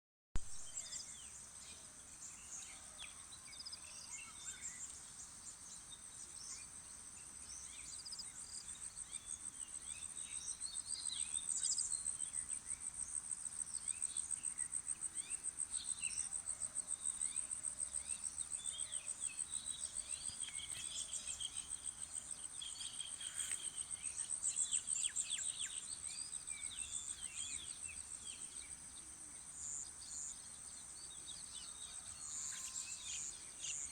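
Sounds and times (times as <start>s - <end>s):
insects trilling: 7.6s - 33.9s.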